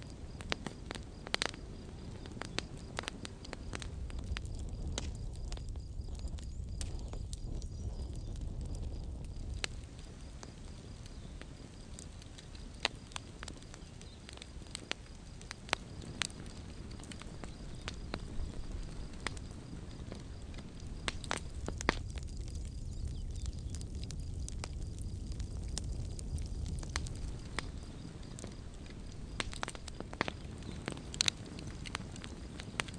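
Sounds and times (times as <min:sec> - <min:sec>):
campfire crackling and popping: 0:00.0 - 0:32.9.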